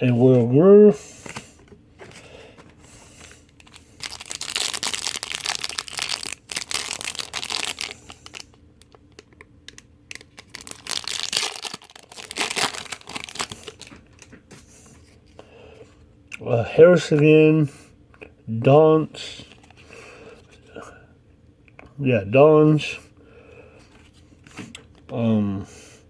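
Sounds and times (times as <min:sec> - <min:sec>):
wrapper crinkling and tearing: 0:03.5 - 0:14.3.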